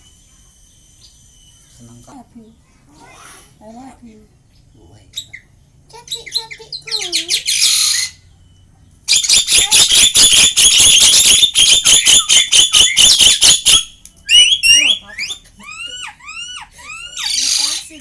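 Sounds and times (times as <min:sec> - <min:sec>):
whistled chirps: 0:00.0 - 0:02.2, 0:07.4 - 0:15.4
starling calling rapidly: 0:05.1 - 0:08.3, 0:09.1 - 0:18.0.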